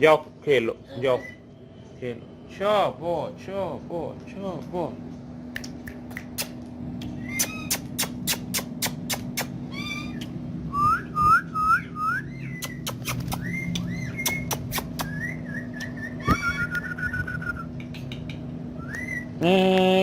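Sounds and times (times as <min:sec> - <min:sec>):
parrot whistling: 0:07.2 - 0:08.1, 0:09.7 - 0:17.7, 0:18.8 - 0:19.4.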